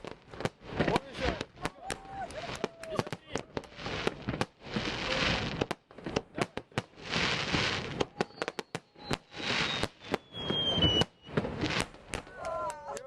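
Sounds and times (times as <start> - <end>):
fireworks bangs and cracks: 0.0 - 12.9
crackling hiss of fireworks: 0.0 - 13.0
high whistle falling in pitch: 8.2 - 11.4.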